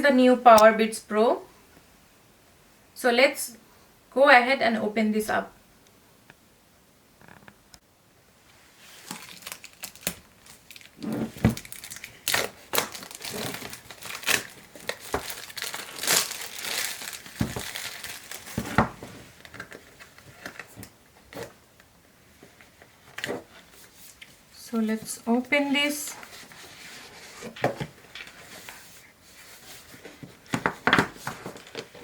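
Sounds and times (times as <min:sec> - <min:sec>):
packaging tearing and crinkling: 0:09.0 - 0:20.8.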